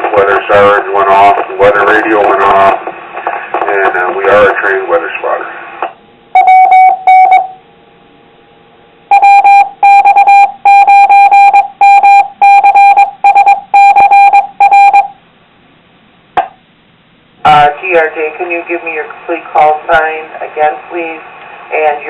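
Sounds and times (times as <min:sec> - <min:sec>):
morse code beeps: 0:06.3 - 0:07.6, 0:09.1 - 0:15.2.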